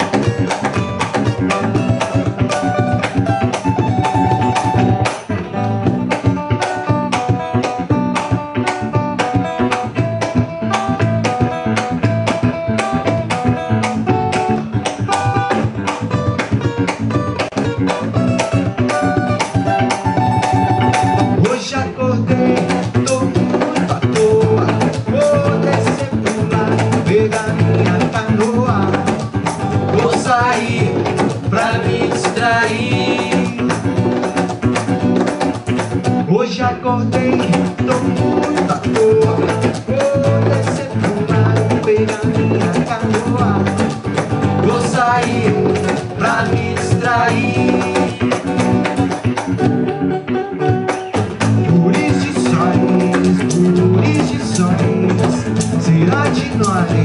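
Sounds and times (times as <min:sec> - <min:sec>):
band playing upbeat song: 0:00.0 - 0:57.0
person singing: 0:19.5 - 0:34.0, 0:36.3 - 0:48.9, 0:51.6 - 0:57.0.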